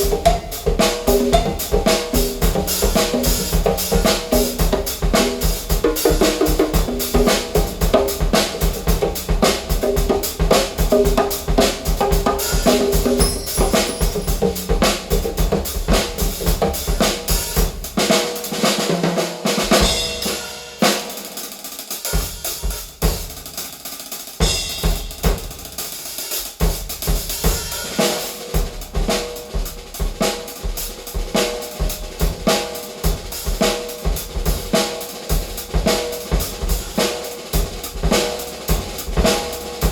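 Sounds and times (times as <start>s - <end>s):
cymbals crashing: 0.0s - 8.5s, 10.5s - 17.8s
drum kit percussion track: 0.0s - 39.9s.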